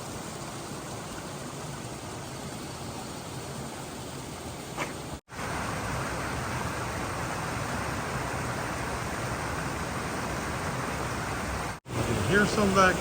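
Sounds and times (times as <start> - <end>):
waterfall rushing: 5.3 - 13.0.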